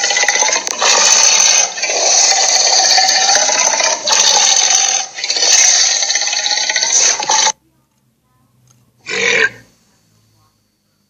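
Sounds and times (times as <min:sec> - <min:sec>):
loud raspy creature roar: 0:00.0 - 0:07.5, 0:09.1 - 0:09.6.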